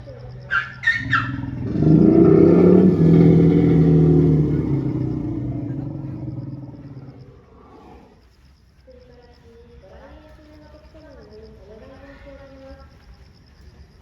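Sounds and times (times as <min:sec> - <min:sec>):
elephant growling roar: 0:00.7 - 0:08.2.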